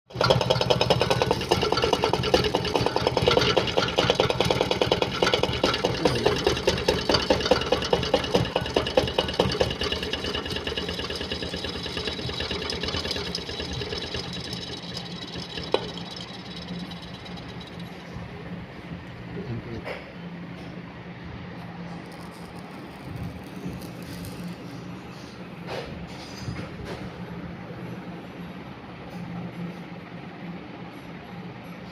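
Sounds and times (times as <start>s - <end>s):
freezer compressor clattering: 0.1s - 18.8s.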